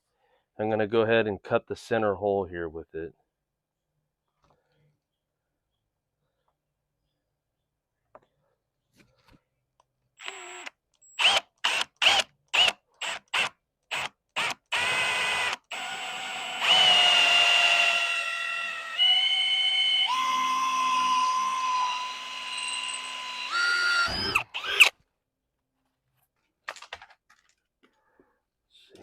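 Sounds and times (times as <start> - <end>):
power drill with hole saw: 10.2 - 25.0.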